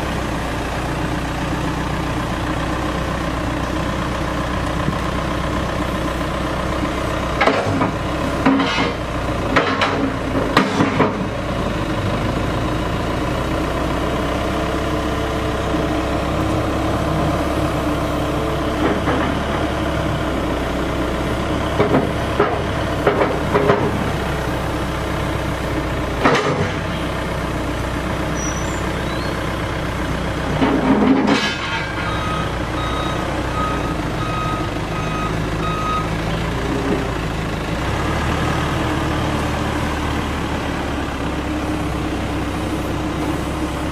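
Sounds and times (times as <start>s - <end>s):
diesel engine running: 0.0s - 43.9s
backup alarm beeping: 32.1s - 36.1s.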